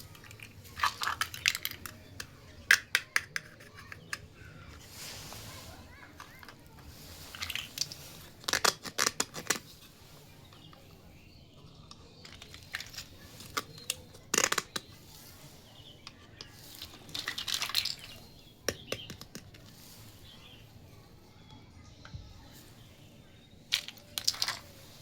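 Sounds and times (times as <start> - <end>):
plastic toy pieces clicking: 0.0 - 4.3, 7.3 - 9.7, 11.7 - 15.0, 16.0 - 19.8, 23.7 - 24.9
plastic packaging crinkling: 0.0 - 21.4, 22.4 - 25.0.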